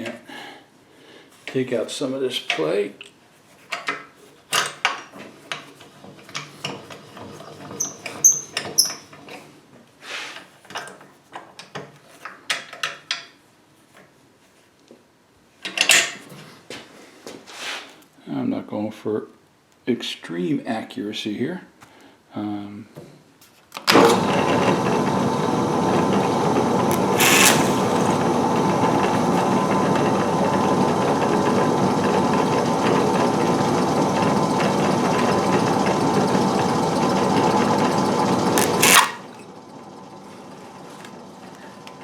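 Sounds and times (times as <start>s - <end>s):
drill press running: 23.9s - 42.0s.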